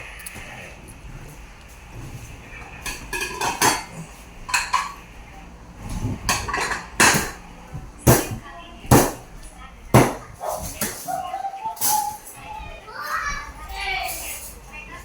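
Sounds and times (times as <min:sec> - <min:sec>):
metal dishes clinking: 0:02.8 - 0:05.1, 0:06.2 - 0:07.5, 0:10.0 - 0:12.4.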